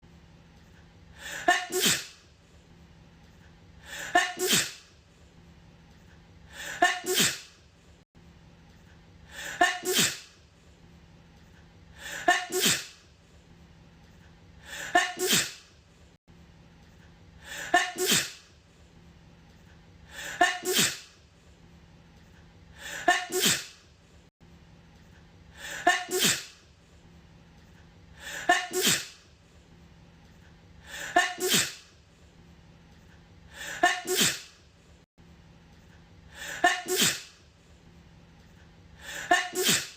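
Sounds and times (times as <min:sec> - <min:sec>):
woman sneezing: 0:01.2 - 0:02.2, 0:03.9 - 0:04.9, 0:06.6 - 0:07.6, 0:09.4 - 0:10.4, 0:12.0 - 0:13.0, 0:14.7 - 0:15.7, 0:17.5 - 0:18.5, 0:20.2 - 0:21.2, 0:22.8 - 0:23.8, 0:25.6 - 0:26.6, 0:28.2 - 0:29.2, 0:30.9 - 0:31.9, 0:33.6 - 0:34.6, 0:36.4 - 0:37.4, 0:39.1 - 0:39.9.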